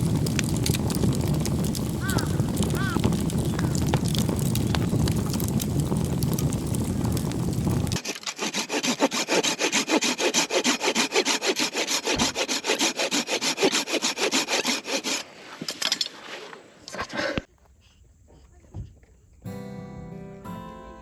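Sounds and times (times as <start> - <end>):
low rumble: 0.0 - 8.0
hand saw cutting wood: 8.0 - 16.2.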